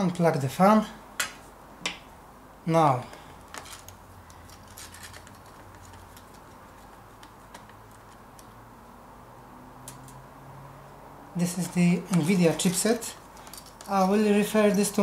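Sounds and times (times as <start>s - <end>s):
small clicks and taps: 3.8s - 8.6s.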